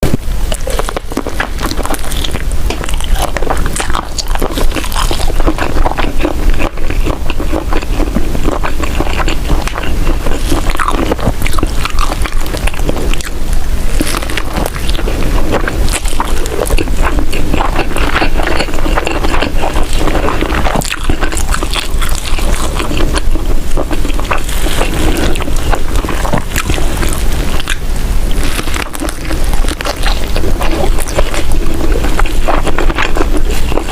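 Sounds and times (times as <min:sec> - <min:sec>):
chewing noodles: 0:00.0 - 0:33.9
steady low hum: 0:00.0 - 0:33.9.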